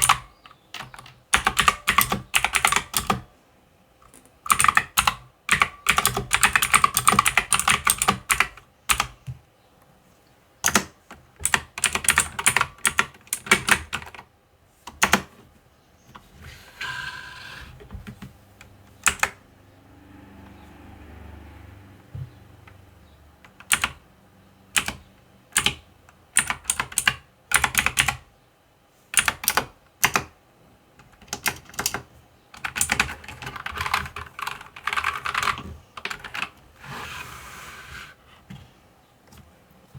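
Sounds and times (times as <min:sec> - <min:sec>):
mechanical keyboard typing: 0:00.0 - 0:03.3, 0:04.5 - 0:09.2, 0:10.6 - 0:14.3, 0:14.9 - 0:15.3, 0:18.0 - 0:19.4, 0:23.4 - 0:24.1, 0:24.7 - 0:28.3, 0:29.1 - 0:30.4, 0:31.0 - 0:36.6.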